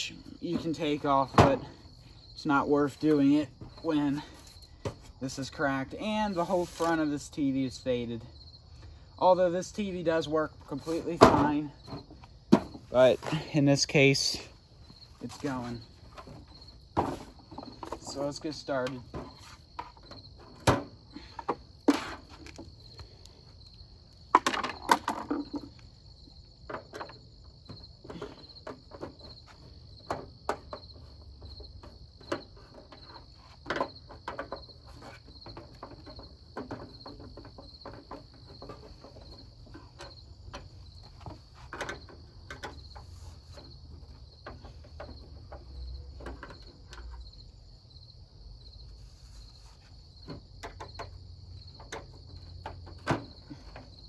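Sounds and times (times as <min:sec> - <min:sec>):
plastic cabinet handled with tools: 0:00.0 - 0:02.2, 0:10.1 - 0:13.6, 0:14.4 - 0:23.0, 0:24.3 - 0:47.6, 0:49.0 - 0:54.0
crickets chirping: 0:00.0 - 0:54.0.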